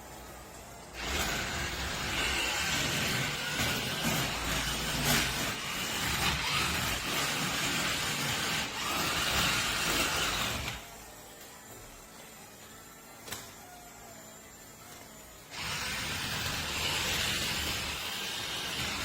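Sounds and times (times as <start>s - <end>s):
electric motor whining: 0.8s - 11.3s, 12.4s - 19.0s.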